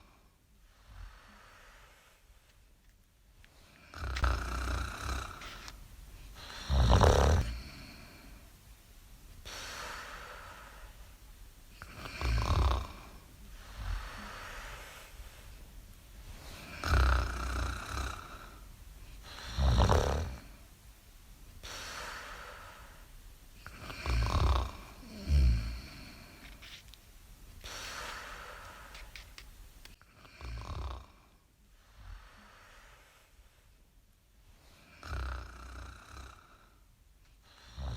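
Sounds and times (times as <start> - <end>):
loud low snore: 3.8 - 5.8, 6.4 - 8.2, 11.8 - 15.1, 16.4 - 18.6, 19.2 - 20.6, 23.6 - 26.6, 30.0 - 31.3, 34.8 - 36.8, 37.5 - 37.9.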